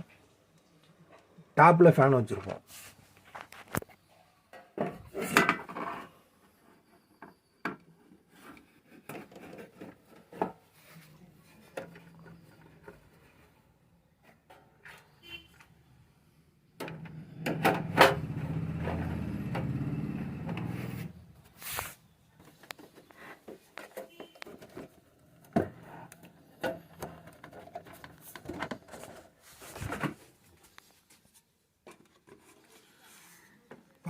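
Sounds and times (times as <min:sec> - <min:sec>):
loud scraping rub: 0:18.5 - 0:22.0.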